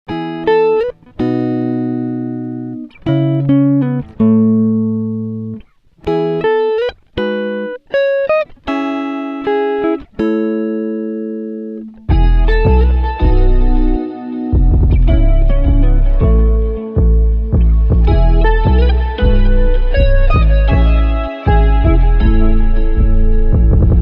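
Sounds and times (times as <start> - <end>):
guitar playing chords: 0.1 - 24.0.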